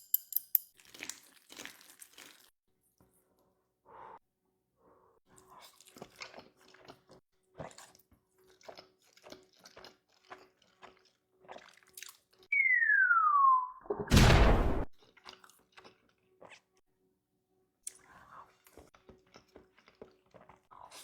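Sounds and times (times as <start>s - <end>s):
chewing and mouth clicks: 5.4s - 12.5s, 15.0s - 16.8s, 17.8s - 21.0s
descending whistle tone: 12.5s - 14.8s.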